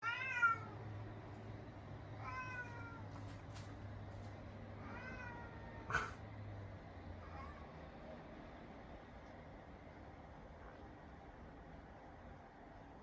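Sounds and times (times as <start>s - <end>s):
cat meowing: 0.0s - 0.7s, 4.8s - 6.2s.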